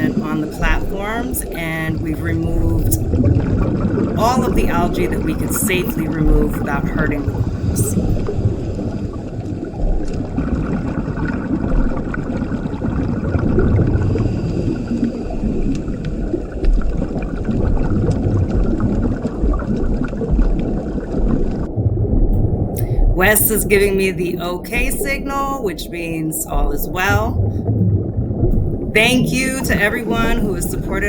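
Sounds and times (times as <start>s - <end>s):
underwater rush of moving water: 0.0s - 31.0s.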